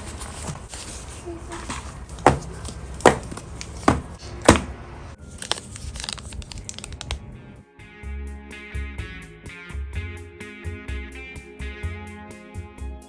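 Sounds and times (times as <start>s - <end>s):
packaging crinkling: 5.2s - 7.2s
packaging ripping: 5.2s - 7.2s
background guitar music: 7.6s - 13.0s.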